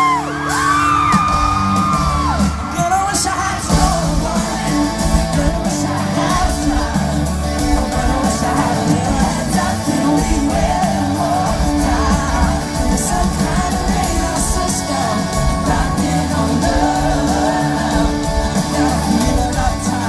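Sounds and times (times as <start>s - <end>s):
live country pop band playing: 0.0s - 20.0s
person singing: 0.0s - 20.0s.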